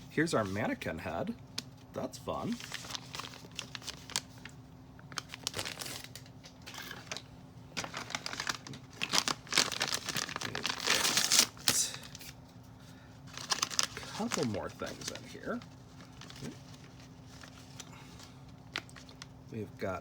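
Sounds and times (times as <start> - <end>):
plastic bags crinkling and tearing: 2.4 - 7.2, 7.8 - 12.4, 13.2 - 19.4.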